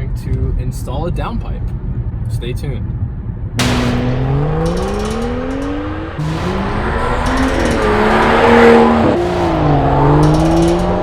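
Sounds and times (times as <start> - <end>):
car engine accelerating hard: 3.6 - 11.0.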